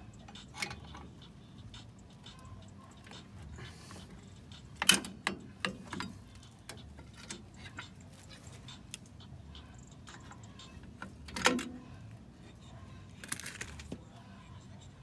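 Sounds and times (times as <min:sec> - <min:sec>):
metal tools clinking and tapping: 0:04.8 - 0:08.7.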